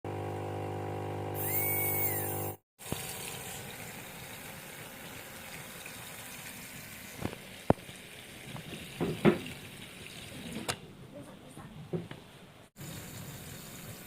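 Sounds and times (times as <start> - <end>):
water running and splashing: 2.8 - 10.7.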